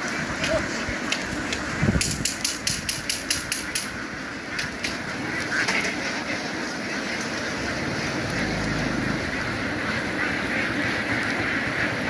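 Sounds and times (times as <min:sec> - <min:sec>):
ducks quacking: 0:00.0 - 0:02.0, 0:02.8 - 0:12.0.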